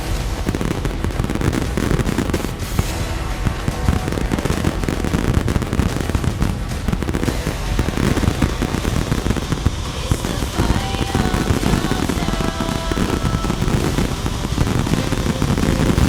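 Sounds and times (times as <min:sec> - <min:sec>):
fireworks booms and cracks: 0:00.0 - 0:16.0
low rumble: 0:00.0 - 0:16.0.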